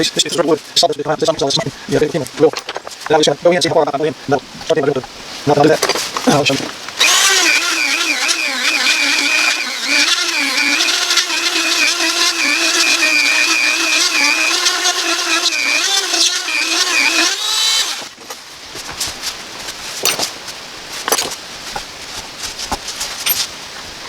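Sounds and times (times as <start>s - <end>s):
power tool bit cutting wood: 7.0s - 18.2s.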